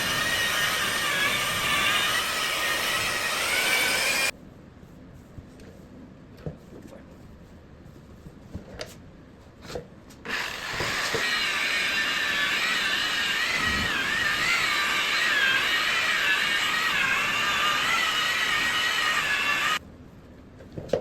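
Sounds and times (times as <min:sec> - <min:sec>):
electric buffer motor whine: 0:00.0 - 0:04.3, 0:10.3 - 0:19.8.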